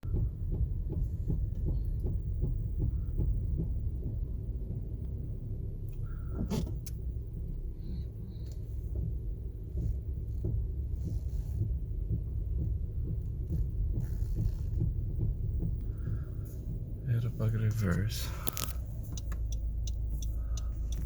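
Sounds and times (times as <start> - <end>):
faint repeating knocks: 0.0 - 5.2, 8.8 - 18.2
car engine low rumble: 0.0 - 21.0.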